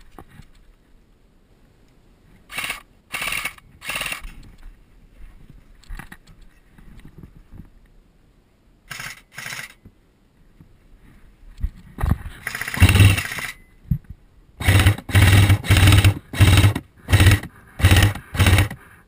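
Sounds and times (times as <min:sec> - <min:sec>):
airsoft gun full-auto bursts: 0:02.5 - 0:04.3, 0:08.9 - 0:09.8, 0:12.4 - 0:13.6, 0:14.6 - 0:18.8.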